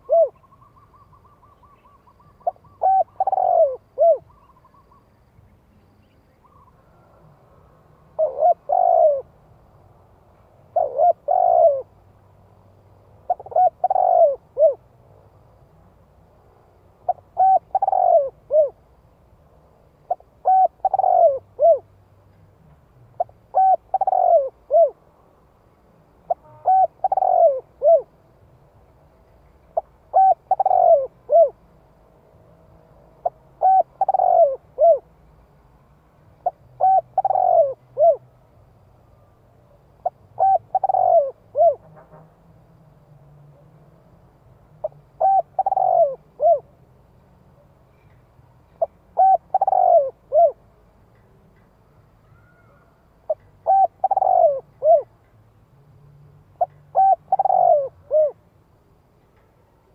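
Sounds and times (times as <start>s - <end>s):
dove cooing: 0.0s - 5.0s, 8.1s - 9.4s, 10.7s - 12.0s, 13.2s - 14.8s, 17.0s - 18.8s, 20.1s - 21.9s, 23.2s - 25.0s, 26.3s - 28.2s, 29.8s - 31.6s, 33.2s - 35.1s, 36.4s - 38.3s, 40.0s - 41.8s, 44.8s - 46.7s, 48.8s - 50.6s, 52.3s - 55.2s, 56.6s - 58.4s.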